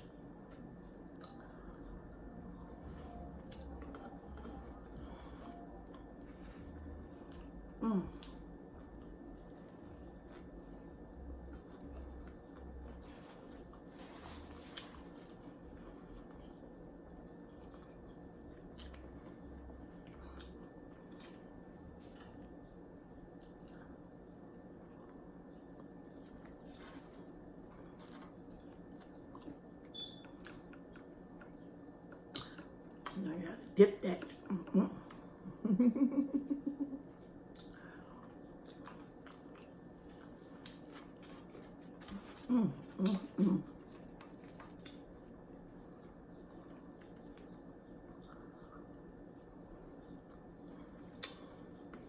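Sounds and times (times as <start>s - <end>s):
person chewing food: 0.0s - 1.9s, 3.0s - 22.7s, 24.8s - 33.2s, 37.4s - 49.3s
faint steady hum: 0.0s - 52.0s
person humming: 7.8s - 8.4s
wet mouth clicks and smacks: 51.2s - 51.4s.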